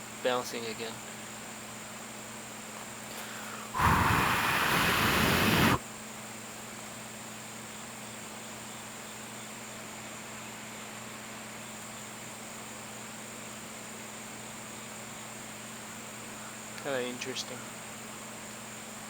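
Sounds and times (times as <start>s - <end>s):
person blowing breath: 3.1s - 5.8s.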